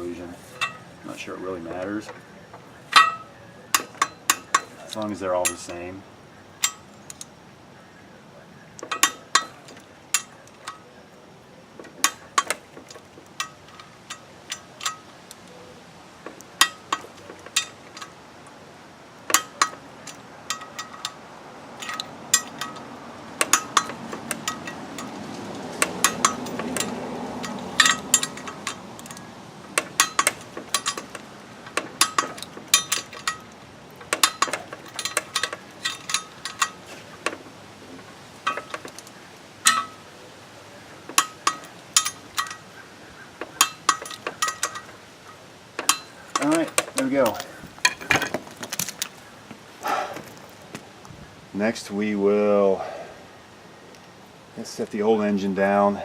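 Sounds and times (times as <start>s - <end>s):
wrench clicking on bolts: 21.8s - 37.4s, 38.5s - 40.0s, 41.1s - 42.8s, 43.4s - 45.0s, 45.8s - 49.0s.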